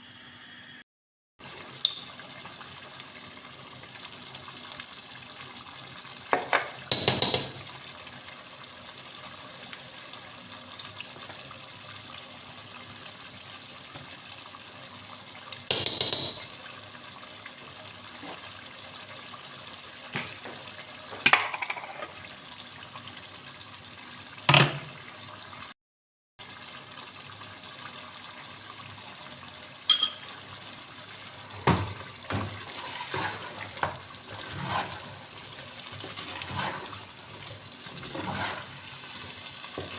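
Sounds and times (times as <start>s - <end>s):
cooking hiss: 26.4s - 39.9s
utensils clinking: 29.9s - 30.3s.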